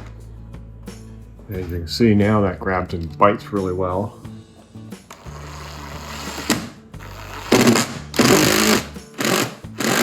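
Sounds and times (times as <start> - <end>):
power screwdriver driving screws: 5.1 - 10.0.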